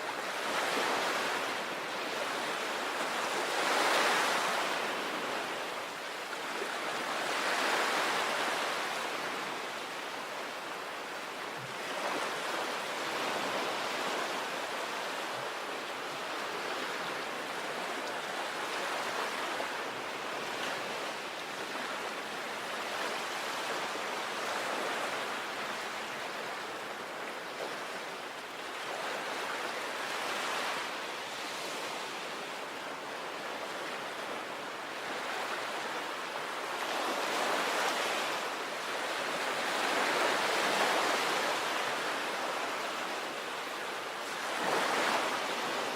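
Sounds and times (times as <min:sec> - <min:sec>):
sea waves breaking on shore: 0:00.0 - 0:45.9.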